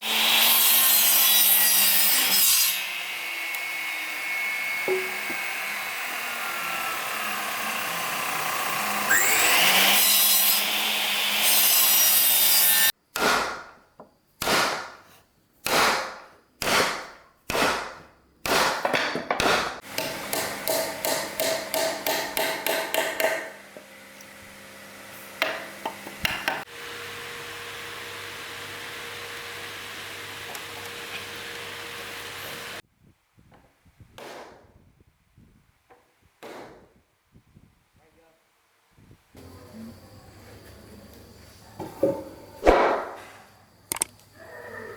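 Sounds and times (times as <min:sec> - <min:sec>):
hand saw cutting wood: 0:00.0 - 0:12.9, 0:25.0 - 0:26.7, 0:28.0 - 0:32.8.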